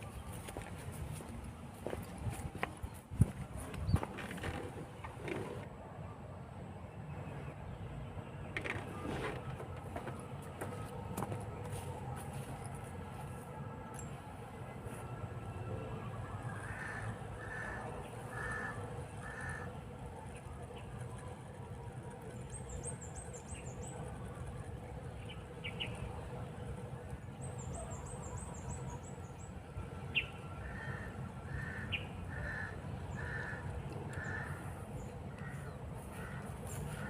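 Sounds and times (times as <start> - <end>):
steady low rumble: 0.0 - 37.0.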